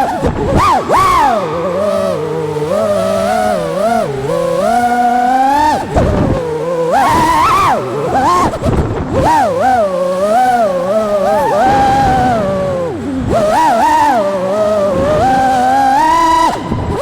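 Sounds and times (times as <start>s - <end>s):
drone motors whining: 0.0s - 17.0s
rushing air noise: 11.5s - 15.7s.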